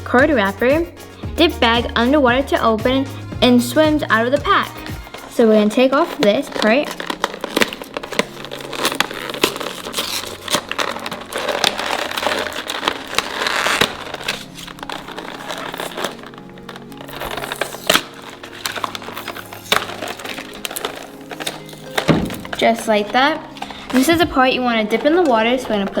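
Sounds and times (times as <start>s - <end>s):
plastic packaging crinkling: 4.2s - 26.0s.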